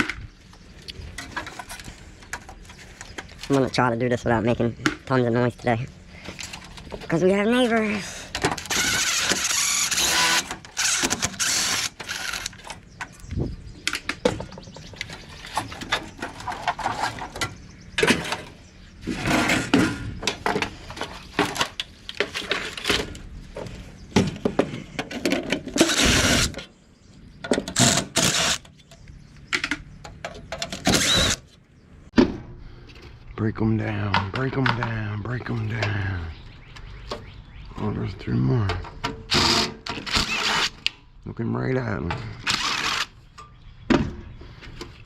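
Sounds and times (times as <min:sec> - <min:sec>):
metal clanks and rattles: 0:06.2 - 0:26.7.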